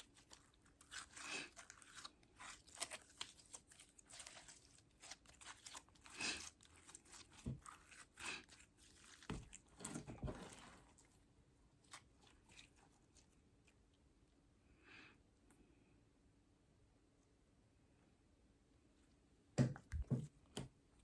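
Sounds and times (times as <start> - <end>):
slime squelching by hand: 0.0 - 14.0.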